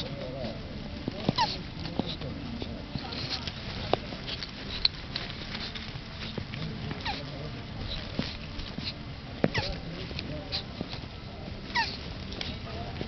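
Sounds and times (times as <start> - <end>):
turtle squeaky cries: 1.3 - 1.7, 7.0 - 9.9, 11.7 - 12.1.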